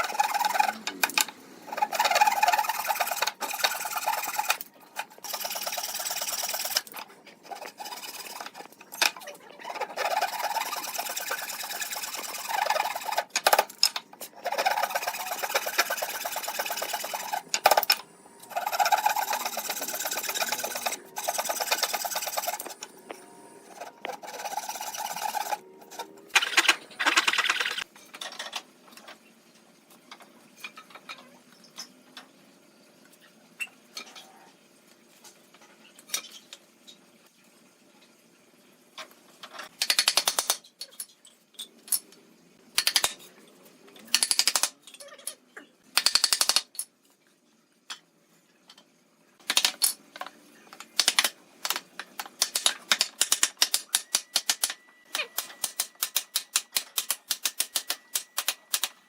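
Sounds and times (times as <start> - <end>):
hand tool rasping wood: 0.0 - 4.6, 5.2 - 8.7, 9.8 - 13.6, 14.4 - 17.9, 18.5 - 22.8, 23.7 - 25.6.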